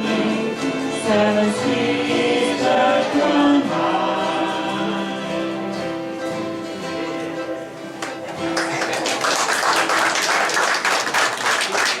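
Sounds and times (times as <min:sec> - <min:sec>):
audience applause: 0:08.0 - 0:12.0.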